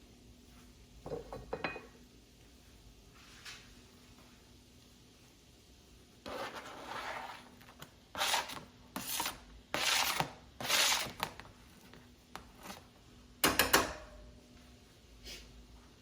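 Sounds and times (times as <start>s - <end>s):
spatula scraping frying pan: 6.3s - 11.4s.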